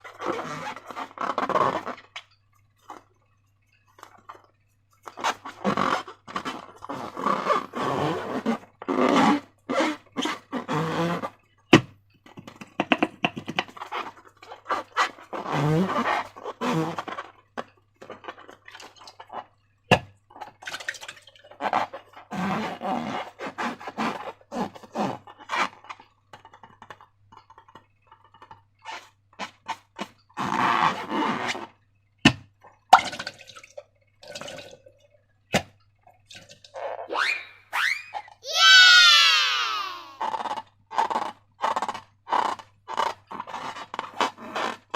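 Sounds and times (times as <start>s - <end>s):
balloon squealing: 36.8s - 40.6s.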